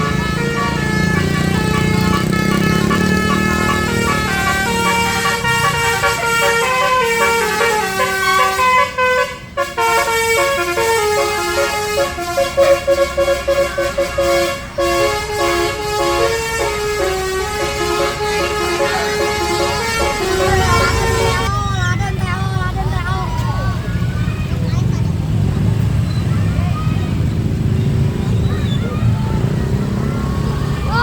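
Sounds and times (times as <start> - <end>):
musical bus horn melody: 0.0 - 21.5.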